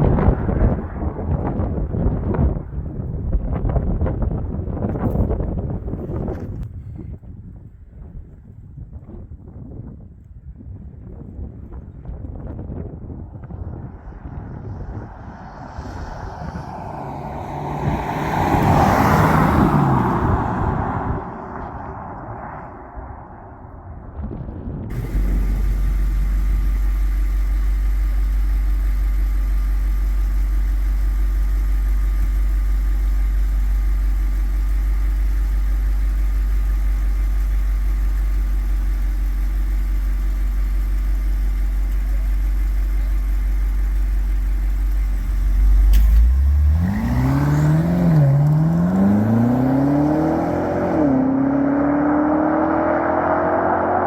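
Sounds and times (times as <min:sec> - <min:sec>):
low exhaust drone: 0:13.2 - 0:54.0
car engine accelerating: 0:13.3 - 0:54.0.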